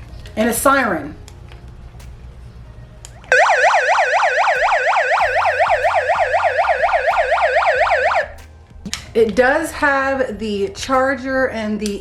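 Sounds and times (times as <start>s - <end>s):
electronic siren wailing: 3.3s - 8.4s.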